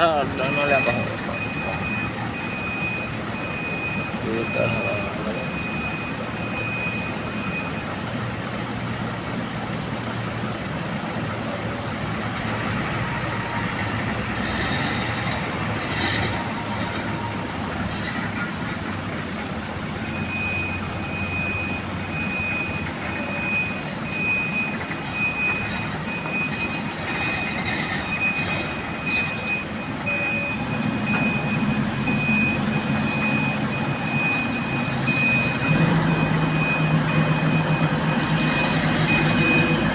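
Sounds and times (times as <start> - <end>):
reversing alarm beeping: 0.0 - 8.0, 20.0 - 39.9
heavy diesel machinery running: 0.0 - 39.9.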